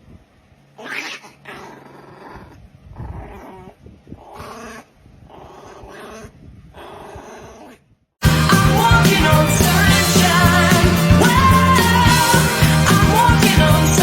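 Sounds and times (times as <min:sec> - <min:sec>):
pet animal calling: 0:00.8 - 0:07.8.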